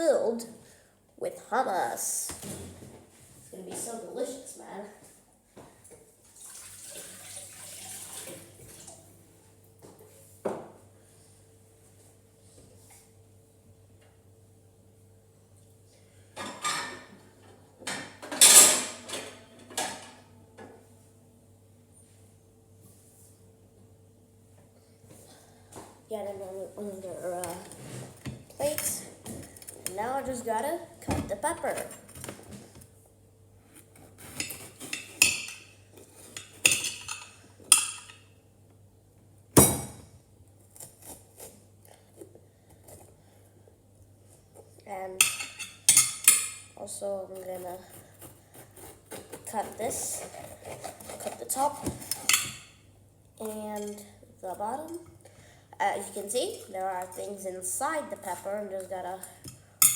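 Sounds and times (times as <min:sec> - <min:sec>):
dishes clattering: 0:16.4 - 0:17.1
knife cutting pepper: 0:33.7 - 0:35.4, 0:47.4 - 0:52.4.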